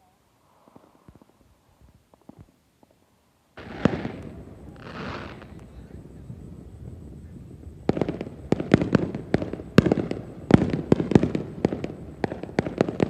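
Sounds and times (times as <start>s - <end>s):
fireworks banging: 3.6s - 13.0s.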